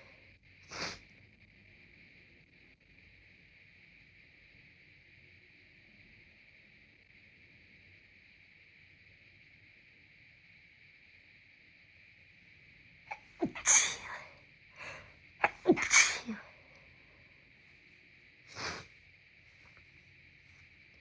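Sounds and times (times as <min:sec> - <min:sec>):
congested sneezing: 0:00.7 - 0:01.0, 0:13.1 - 0:16.6, 0:18.5 - 0:18.9
soft breathy sound: 0:13.1 - 0:17.6, 0:18.5 - 0:20.8.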